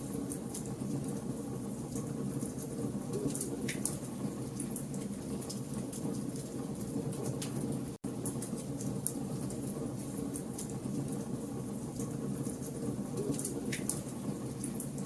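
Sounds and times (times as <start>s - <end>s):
low rumble of flames: 0.0s - 15.0s.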